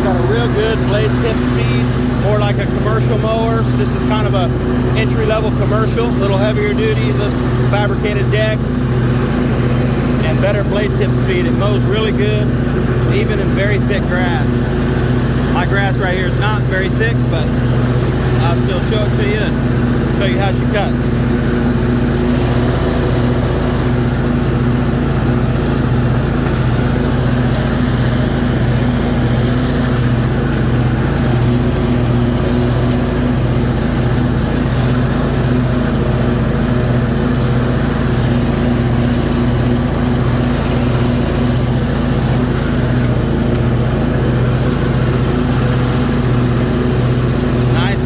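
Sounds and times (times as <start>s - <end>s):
lawn mower engine running: 0.0s - 48.0s
mower blades cutting grass: 0.0s - 48.0s.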